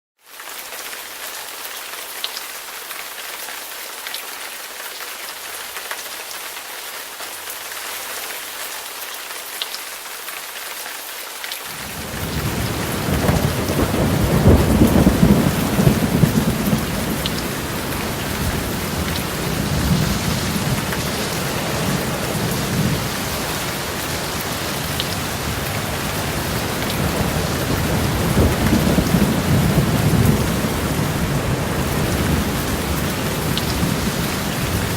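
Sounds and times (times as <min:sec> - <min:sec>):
steady rain hissing: 0:00.2 - 0:34.9
thunder rumbling: 0:11.7 - 0:34.9.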